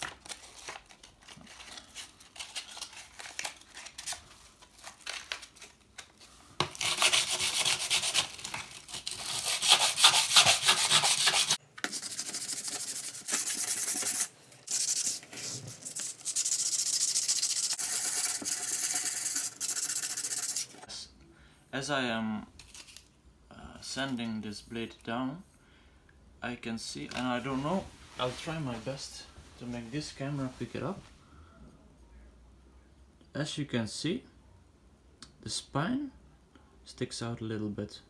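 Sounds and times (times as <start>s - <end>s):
sandpaper rubbing on steel: 9.3s - 20.8s.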